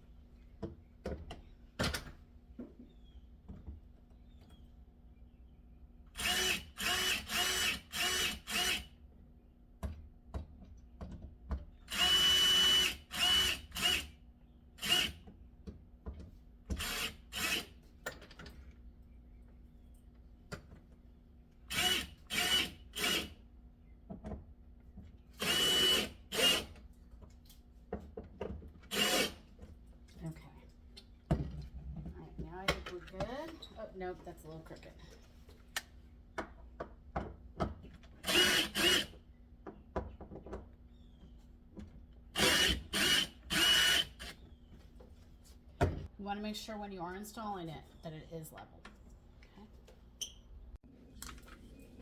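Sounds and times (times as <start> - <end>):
cordless drill whining: 6.2 - 8.9, 11.9 - 14.1, 25.4 - 26.7, 38.2 - 39.1, 42.4 - 44.5.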